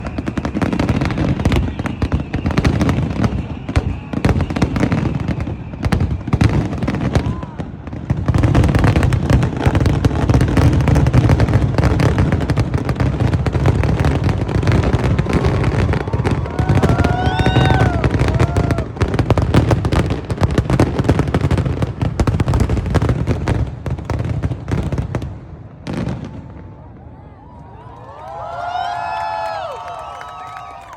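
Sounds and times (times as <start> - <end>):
fireworks whistling: 0.0 - 7.6, 8.4 - 23.5
fireworks booming and crackling: 0.0 - 27.1.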